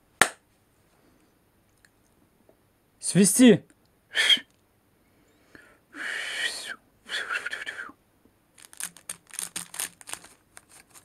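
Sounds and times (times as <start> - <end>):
person trying to whistle: 4.1 - 4.5, 6.0 - 8.0.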